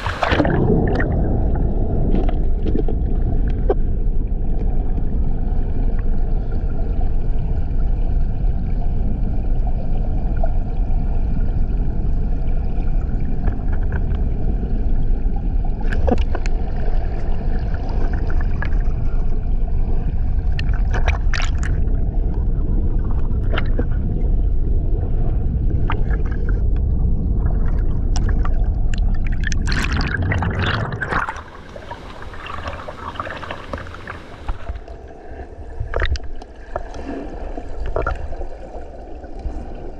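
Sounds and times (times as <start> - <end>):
waterfall rumbling: 0.0 - 1.0
water splashing: 0.0 - 3.8, 20.4 - 22.0, 27.3 - 39.9
water gurgling: 0.0 - 39.9.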